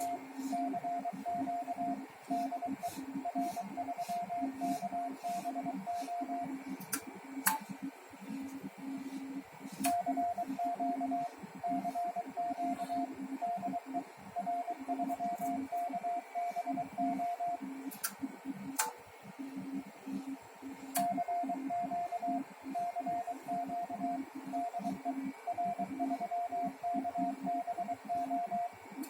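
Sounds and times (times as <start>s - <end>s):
morse code beeps: 0.0s - 6.6s, 9.8s - 17.8s, 21.0s - 28.8s
sharp clicks: 18.8s - 19.0s.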